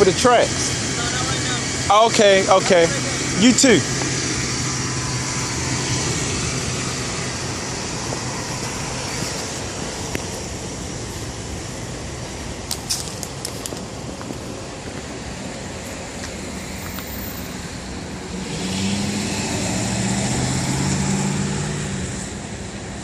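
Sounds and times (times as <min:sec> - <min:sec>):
street traffic: 0:00.0 - 0:23.0
vehicle engine passing close: 0:00.0 - 0:23.0.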